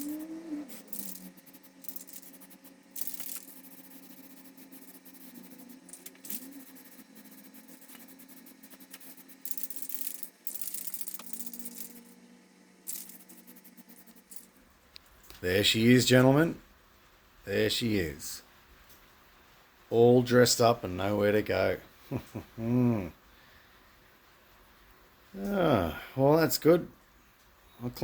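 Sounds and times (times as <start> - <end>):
spray paint hissing: 0.0 - 12.0, 12.8 - 14.5
steady low hum: 0.0 - 18.6.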